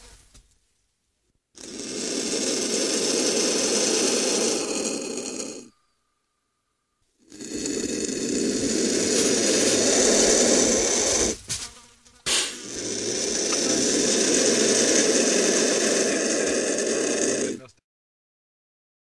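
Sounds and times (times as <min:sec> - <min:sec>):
bird chick hissing: 0:01.6 - 0:05.7, 0:07.2 - 0:17.7.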